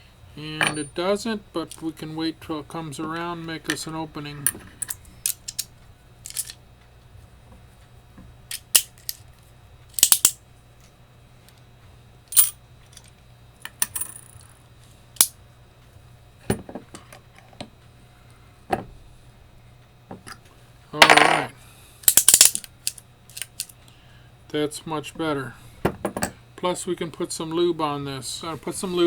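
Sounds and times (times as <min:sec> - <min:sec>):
metallic clicks and clinks: 0:06.3 - 0:06.6, 0:10.0 - 0:10.4, 0:22.1 - 0:23.7.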